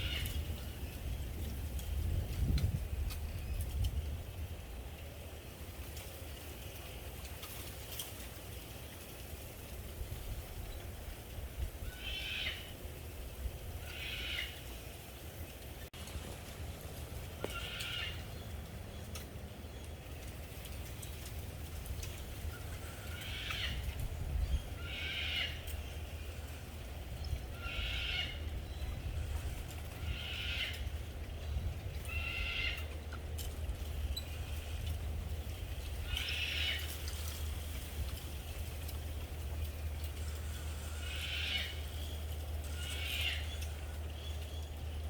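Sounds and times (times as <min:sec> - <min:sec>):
low wind rumble: 0:00.0 - 0:45.0
high-pitched animal calls: 0:24.8 - 0:25.7, 0:27.6 - 0:28.5, 0:40.8 - 0:42.0.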